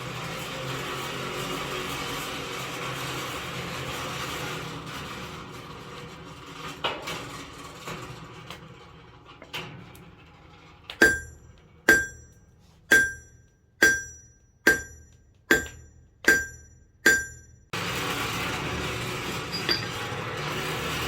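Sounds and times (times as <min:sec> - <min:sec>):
hammer striking steel on anvil: 0:11.0 - 0:17.8, 0:19.5 - 0:19.9.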